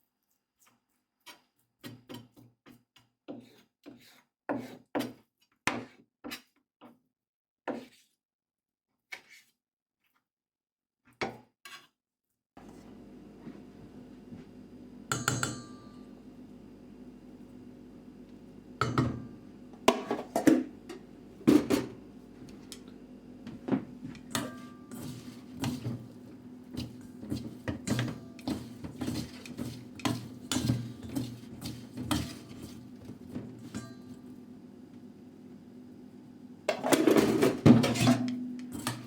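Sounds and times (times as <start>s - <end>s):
utensils clinking on dishes: 24.2s - 26.0s, 26.8s - 32.9s, 33.5s - 34.3s, 36.7s - 39.0s.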